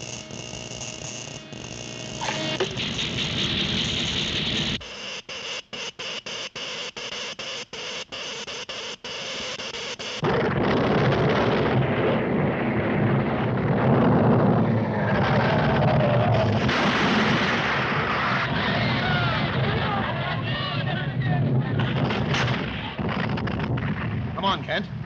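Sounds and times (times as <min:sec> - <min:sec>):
loud continuous rumble: 0:00.0 - 0:04.9
electrical crackling: 0:00.0 - 0:18.8, 0:21.8 - 0:24.6.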